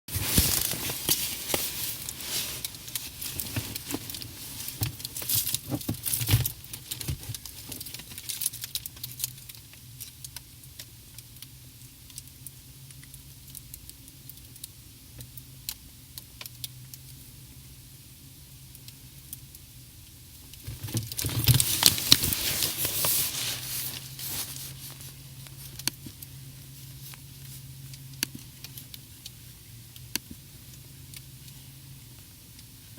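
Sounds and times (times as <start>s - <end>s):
foil blanket crackling: 0.1s - 8.8s, 20.7s - 27.7s.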